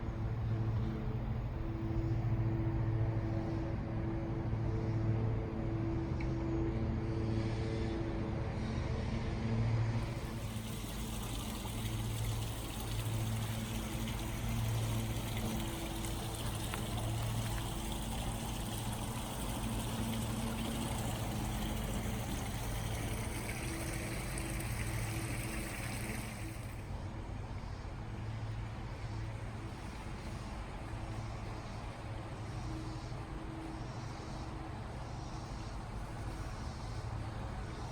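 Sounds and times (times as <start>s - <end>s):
low wavering hum: 0.0s - 37.9s
water trickling: 10.0s - 27.0s.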